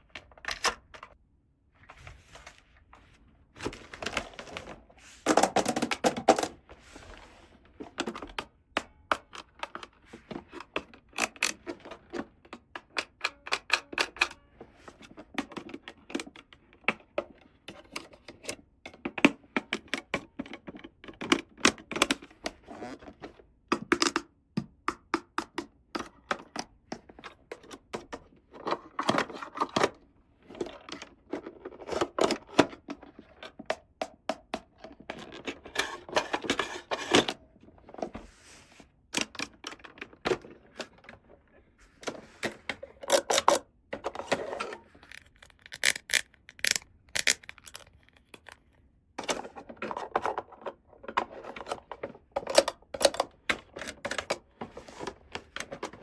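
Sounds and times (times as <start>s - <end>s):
plastic toy pieces clicking: 45.0s - 48.6s.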